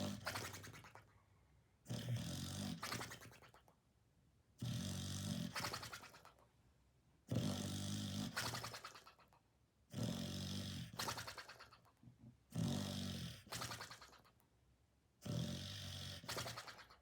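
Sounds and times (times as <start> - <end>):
dog snoring: 1.9 - 3.4, 4.6 - 6.3, 7.3 - 9.0, 9.9 - 11.7, 12.5 - 14.2, 15.2 - 17.0.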